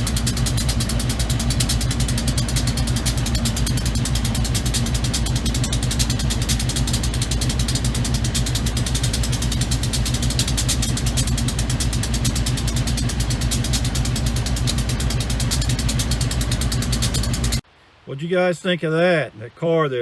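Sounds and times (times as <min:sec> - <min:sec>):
vehicle engine running: 0:00.0 - 0:17.6.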